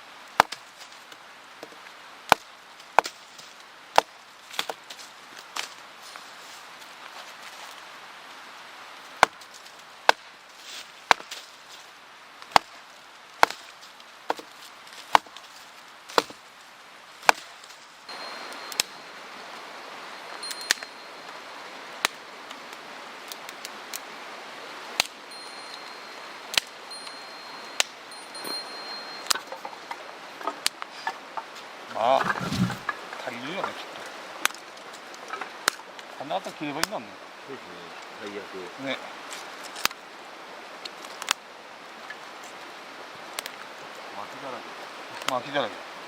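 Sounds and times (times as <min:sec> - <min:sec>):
firewood being chopped: 0:02.3 - 0:03.2, 0:11.1 - 0:11.4, 0:17.2 - 0:17.5, 0:31.9 - 0:32.9.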